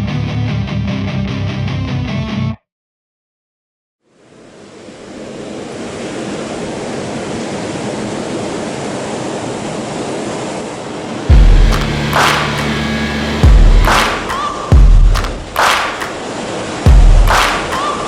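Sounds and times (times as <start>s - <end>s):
music: 0.0s - 2.6s, 11.3s - 16.2s, 16.9s - 18.0s
ocean surf rushing: 4.2s - 18.0s.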